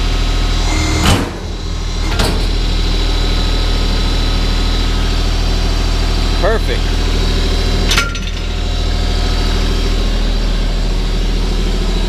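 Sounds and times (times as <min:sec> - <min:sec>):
diesel tractor engine idling: 0:00.0 - 0:12.0
loud clunk: 0:00.8 - 0:02.8.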